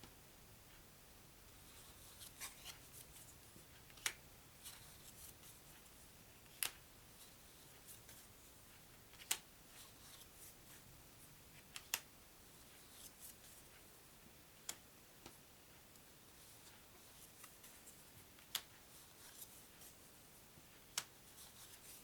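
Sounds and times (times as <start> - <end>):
cards rustling and sliding: 1.6 - 5.8, 9.1 - 10.8, 21.0 - 22.0.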